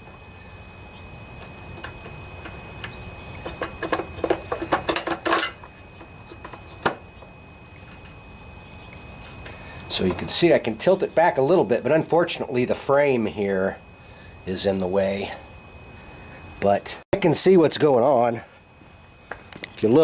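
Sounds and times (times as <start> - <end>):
bolts and socket wrench clinking: 1.7 - 7.0.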